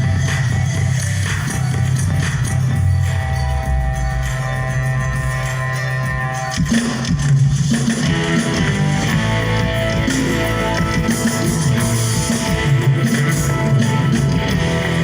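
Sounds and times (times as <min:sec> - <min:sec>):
live band music: 0:03.2 - 0:15.0
electric guitar: 0:07.7 - 0:15.0.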